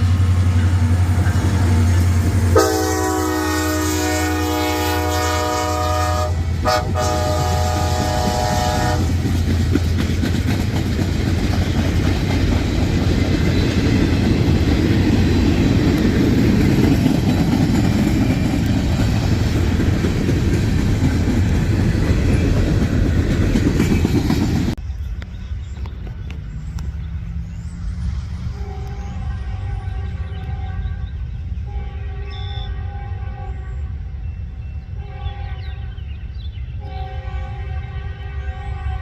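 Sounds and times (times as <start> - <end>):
train wheels rumbling on rails: 0.0 - 39.0
locomotive horn: 1.0 - 9.2, 28.5 - 34.1, 35.0 - 36.1, 36.8 - 39.0.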